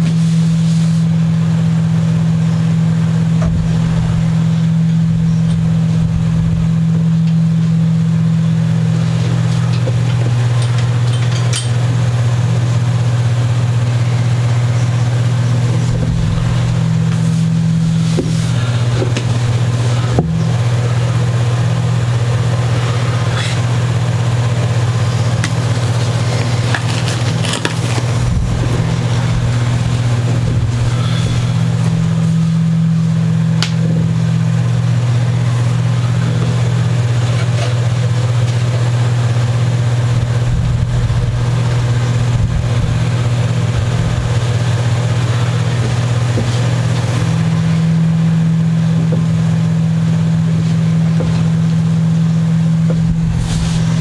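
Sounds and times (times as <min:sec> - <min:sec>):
loud low hum: 0:00.0 - 0:54.0
handling clicks and knocks: 0:25.3 - 0:28.3.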